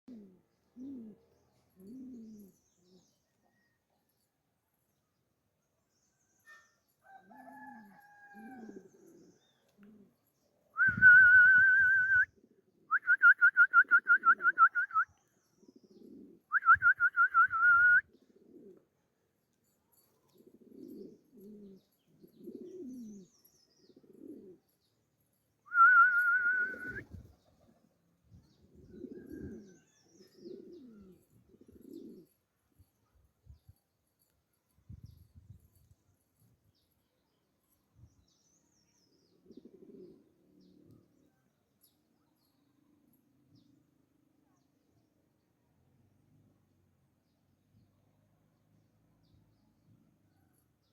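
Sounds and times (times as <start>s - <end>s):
pigeons cooing: 0.1s - 3.0s, 7.6s - 10.2s, 12.3s - 13.0s, 15.6s - 16.6s, 18.1s - 18.9s, 20.3s - 24.7s, 28.5s - 32.4s, 39.3s - 41.2s.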